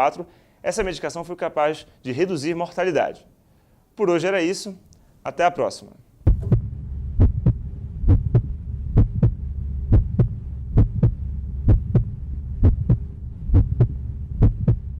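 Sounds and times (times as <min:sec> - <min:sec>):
steady low hum: 0:06.1 - 0:14.9
heartbeat lub-dub beats: 0:06.2 - 0:14.9.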